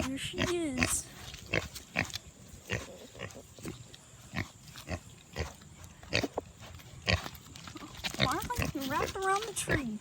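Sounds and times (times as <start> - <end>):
pig grunting: 0.0 - 6.4.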